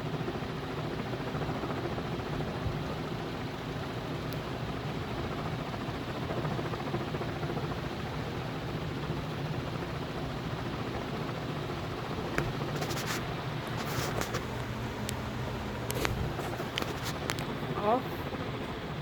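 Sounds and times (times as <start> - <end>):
ceiling fan rushing air: 0.0 - 19.0.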